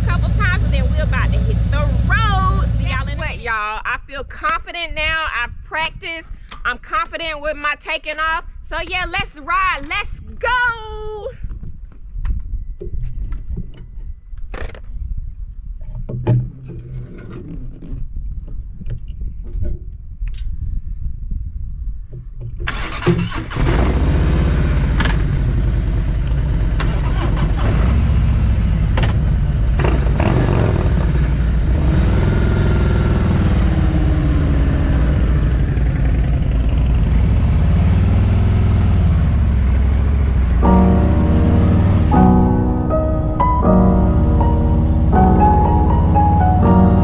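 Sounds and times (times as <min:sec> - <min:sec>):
wind rush: 0:18.0 - 0:22.4
motorcycle engine revving: 0:22.7 - 0:47.0.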